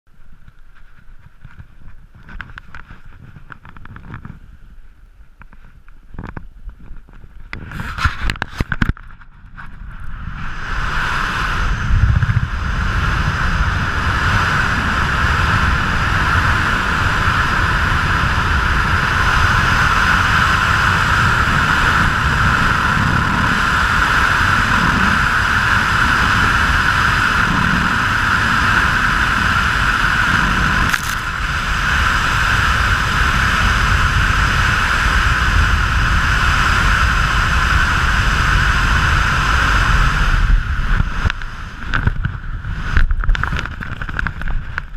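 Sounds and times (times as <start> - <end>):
roar of rushing whitewater: 10.3 - 44.8.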